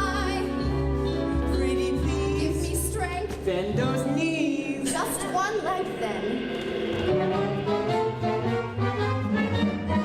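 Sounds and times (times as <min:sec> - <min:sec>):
held low accompaniment chords: 0:03.5 - 0:10.0.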